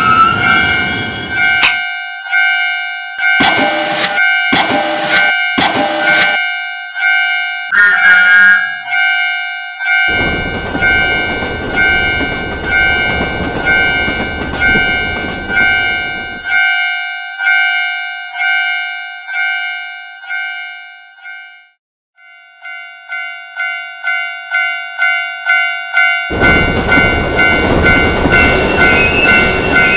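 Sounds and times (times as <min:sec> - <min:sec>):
crossing warning bell clanging: 0:00.4 - 0:29.9
train rushing past: 0:10.1 - 0:16.5, 0:26.3 - 0:29.9.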